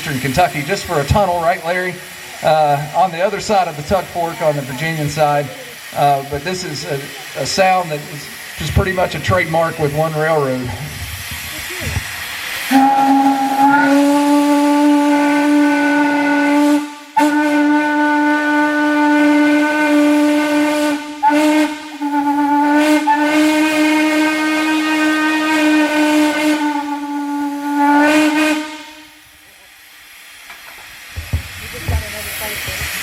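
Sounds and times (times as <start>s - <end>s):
steam hissing: 0.0s - 33.0s
steam whistle blowing: 12.6s - 29.3s.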